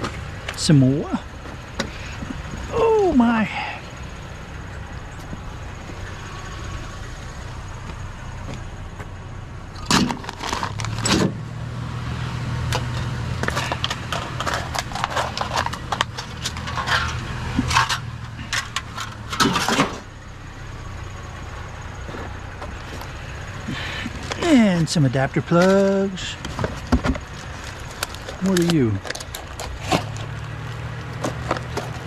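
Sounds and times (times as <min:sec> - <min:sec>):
low engine hum: 0:00.0 - 0:32.0
scrap metal and plastic rattling: 0:09.8 - 0:11.4, 0:12.7 - 0:20.1, 0:24.1 - 0:32.0.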